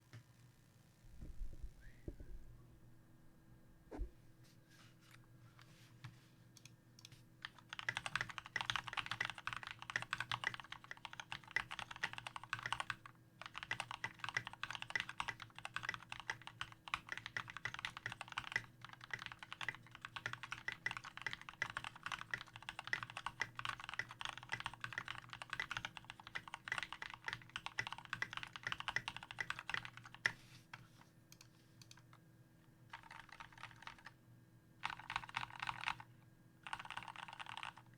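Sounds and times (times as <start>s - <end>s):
fast mechanical keyboard typing: 7.4s - 30.4s, 32.9s - 34.2s, 34.8s - 37.9s.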